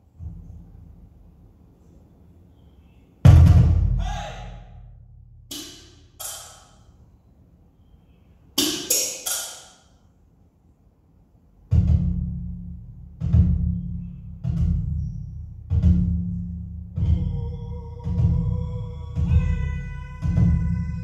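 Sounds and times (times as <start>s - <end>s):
drum hits over speakers: 3.3s - 4.3s, 18.0s - 21.0s.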